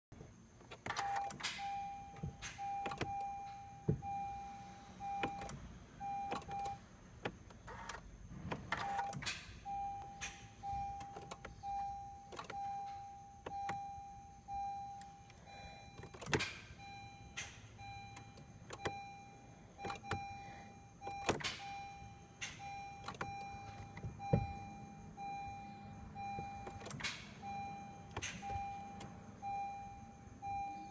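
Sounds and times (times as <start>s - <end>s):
starter clicks and whirring: 0.6s - 19.2s
car warning chime beeping: 1.0s - 6.9s, 8.8s - 30.9s.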